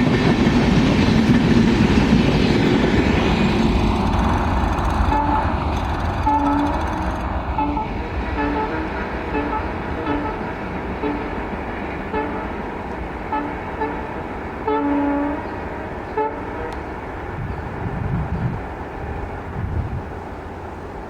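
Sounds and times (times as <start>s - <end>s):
rumble of passing train: 0.0s - 21.0s
locomotive air horn toots: 5.0s - 12.7s, 13.3s - 17.0s.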